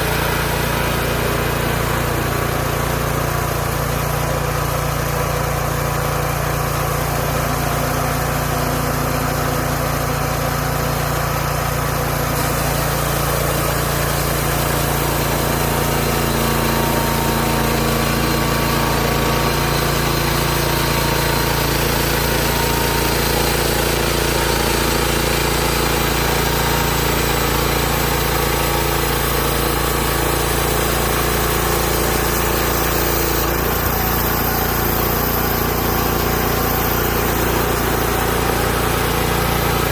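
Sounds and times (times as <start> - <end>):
small gas engine droning: 0.0 - 39.9.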